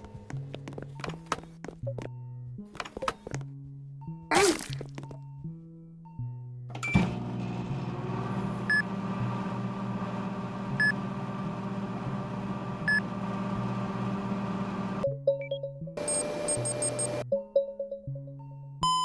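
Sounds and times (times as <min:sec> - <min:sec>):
steady machine hum: 0:07.1 - 0:15.0, 0:16.0 - 0:17.2
short beeps: 0:15.4 - 0:17.2.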